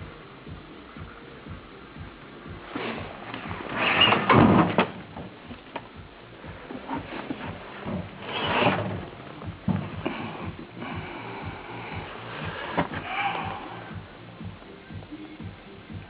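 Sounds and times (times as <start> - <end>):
scraping and rustling: 2.7 - 5.8, 6.6 - 10.2.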